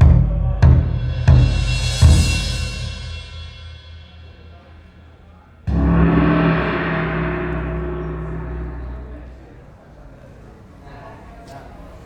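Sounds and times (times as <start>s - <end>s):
deep drum hit: 5.7s - 9.7s
gong strike ringing: 5.7s - 9.9s.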